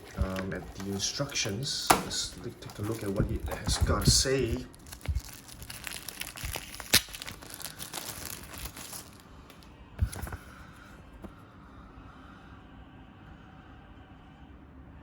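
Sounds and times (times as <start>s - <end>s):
paper and packaging rustling: 0.0s - 10.7s.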